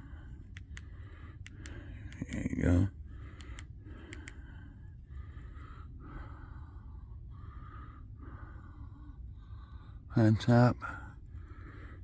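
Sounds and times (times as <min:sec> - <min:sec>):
person breathing: 0:03.1 - 0:10.1.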